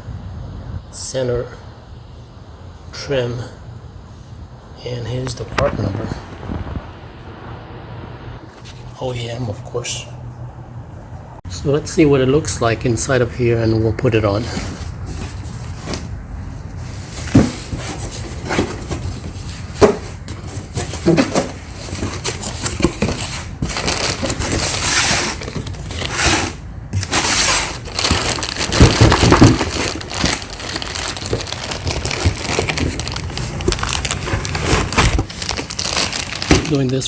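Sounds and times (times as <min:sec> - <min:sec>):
packaging crinkling and rustling: 0:14.4 - 0:37.0.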